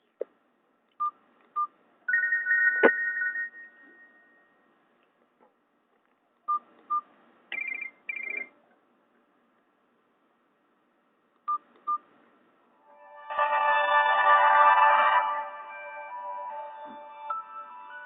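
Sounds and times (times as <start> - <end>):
phone key beeps: 1.0 - 3.6, 6.5 - 8.5
high phone chirps: 6.5 - 8.5
warbling two-tone phone alert: 7.6 - 8.5.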